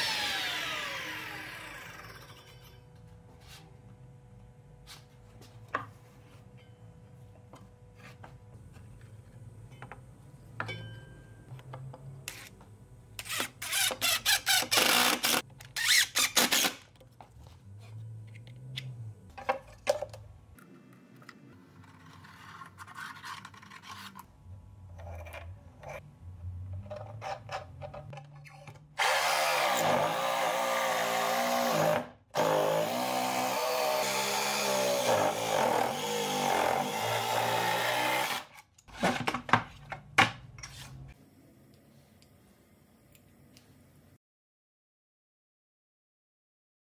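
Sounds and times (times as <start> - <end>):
power tool running: 0.0 - 2.4, 29.0 - 38.5.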